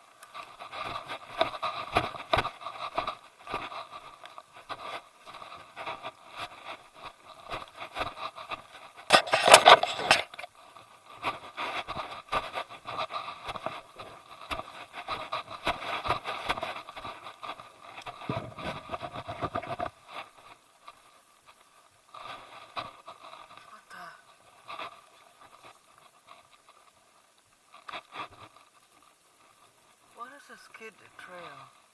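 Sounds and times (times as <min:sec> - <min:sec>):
body rubbing against camera: 0:00.0 - 0:30.2
footsteps crunching: 0:00.0 - 0:30.4.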